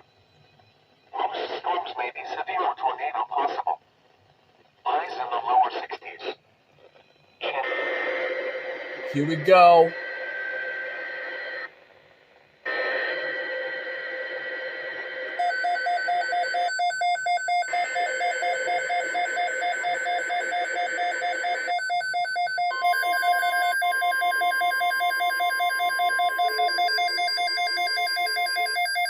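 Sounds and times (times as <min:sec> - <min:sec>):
radio hiss: 0:01.2 - 0:03.8
pulsed alarm beeps: 0:15.4 - 0:29.0.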